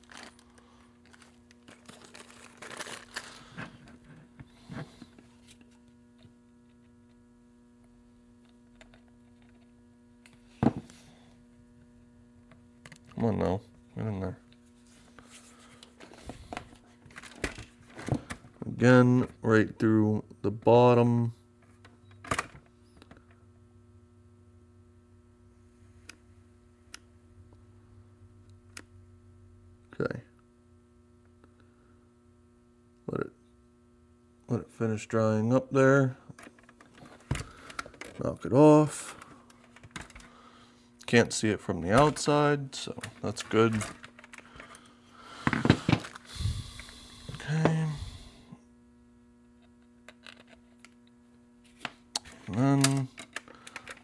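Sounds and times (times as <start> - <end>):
plastic rustles and clicks: 0.0 - 4.1, 36.4 - 38.3, 38.9 - 40.3, 43.0 - 46.3, 51.7 - 54.0
electrical hum: 0.0 - 54.0.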